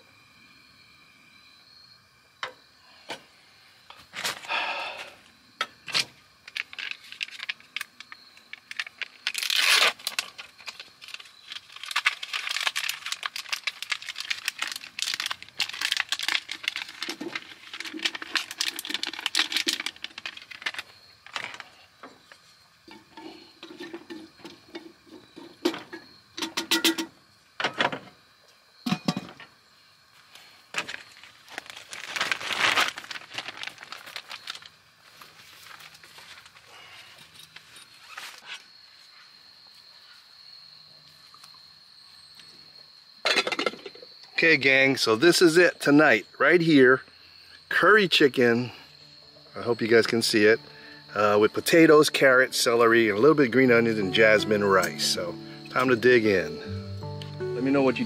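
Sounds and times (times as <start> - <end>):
packaging crinkling: 6.5 - 21.7, 30.8 - 36.6
pots and utensils clinking: 22.9 - 27.1, 28.9 - 29.5.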